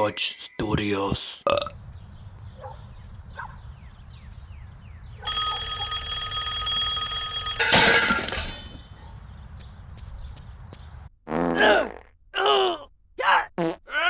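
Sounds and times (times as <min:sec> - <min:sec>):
bell-like ringing tone: 0:05.3 - 0:08.8
loud crash with shattering clatter: 0:07.5 - 0:08.8.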